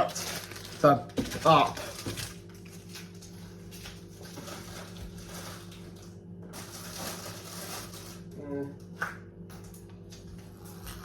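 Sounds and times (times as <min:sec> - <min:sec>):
packaging rustling and crinkling: 0:00.0 - 0:08.2
steady electrical hum: 0:00.0 - 0:11.0.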